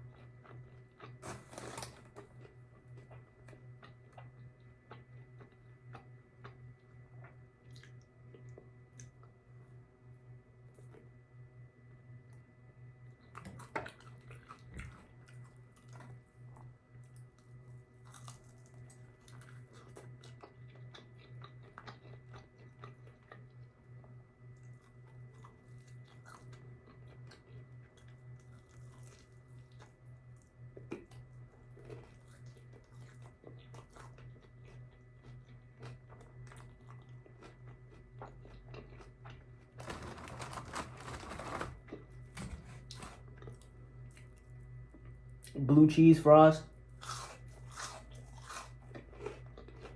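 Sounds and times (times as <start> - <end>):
chewing and biting food: 0.0 - 9.4, 13.2 - 45.6, 46.9 - 49.9
steady low hum: 0.0 - 49.9.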